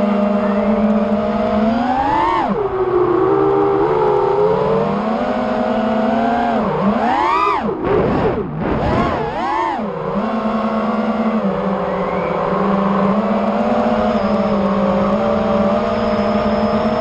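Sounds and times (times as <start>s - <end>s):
quadcopter motors whining: 0.0s - 17.0s.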